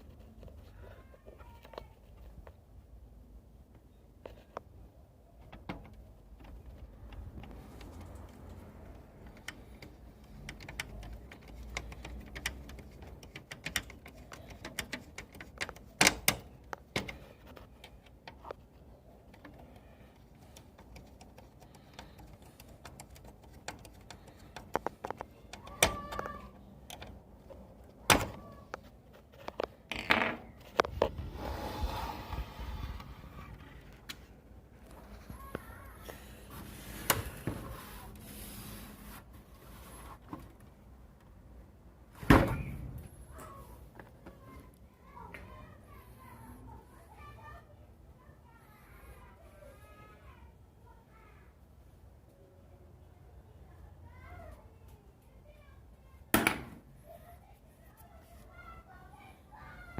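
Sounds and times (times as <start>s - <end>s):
clicks and taps: 9.2s - 18.6s, 19.3s - 27.2s.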